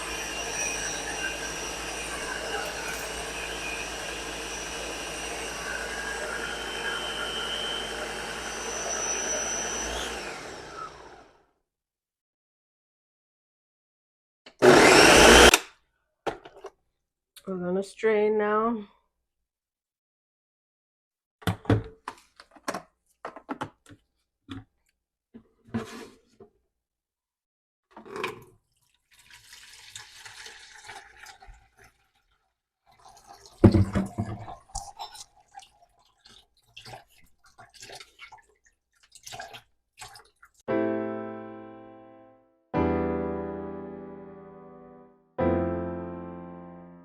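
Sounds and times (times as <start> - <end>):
juice splashing and dripping: 28.2 - 40.7
kitchenware knocking and clattering: 33.6 - 34.6
electric piano chord: 40.7 - 47.0.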